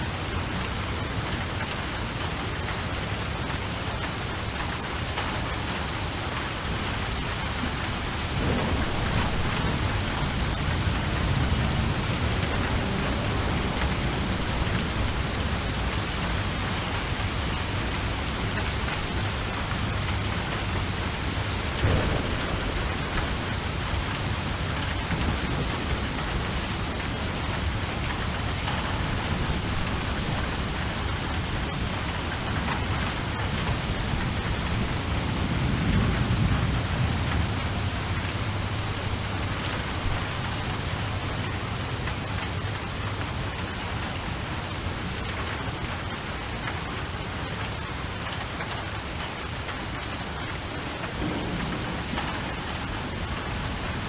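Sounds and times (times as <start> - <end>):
steady rain falling: 0.0 - 54.0
low rumble: 21.8 - 25.7.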